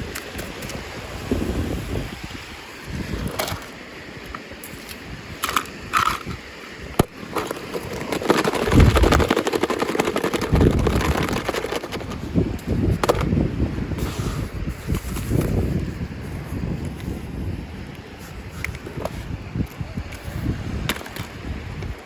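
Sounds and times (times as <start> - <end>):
plastic and cardboard rustling: 7.1 - 13.4
packaging crinkling and crackling: 7.3 - 12.2.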